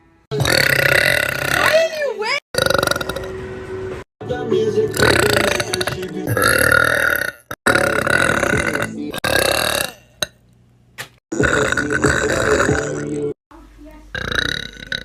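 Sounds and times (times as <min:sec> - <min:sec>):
girls burping: 0:11.3 - 0:13.4, 0:14.2 - 0:15.0.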